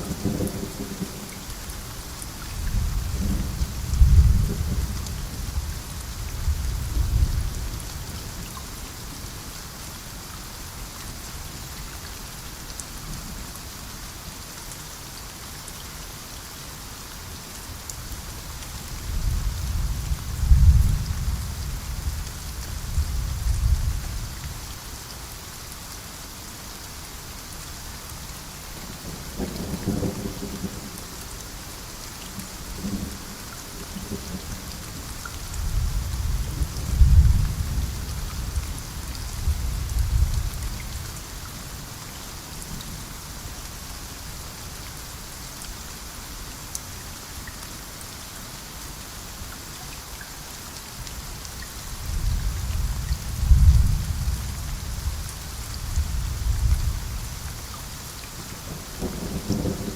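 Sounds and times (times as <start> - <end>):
low thunder rumbling: 0.0 - 1.4, 2.6 - 7.7, 19.1 - 24.0, 29.0 - 31.1, 32.8 - 41.0, 52.1 - 57.5, 58.7 - 59.9
rain hissing: 16.7 - 59.9.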